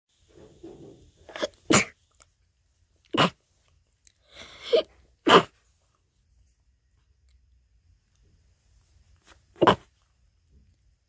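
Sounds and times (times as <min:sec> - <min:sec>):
person sneezing: 0:01.3 - 0:02.0, 0:03.1 - 0:03.4, 0:04.3 - 0:05.6, 0:09.6 - 0:09.9
gasping inhales: 0:04.2 - 0:04.9.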